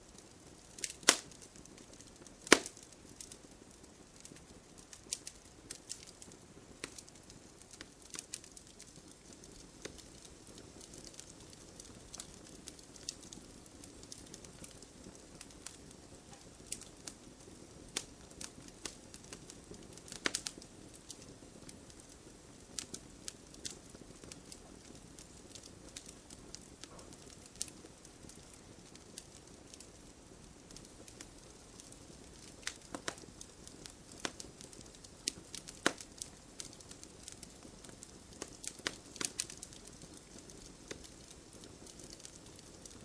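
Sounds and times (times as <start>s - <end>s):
campfire crackling and popping: 0.0s - 43.0s
hiss of flames: 0.0s - 43.0s.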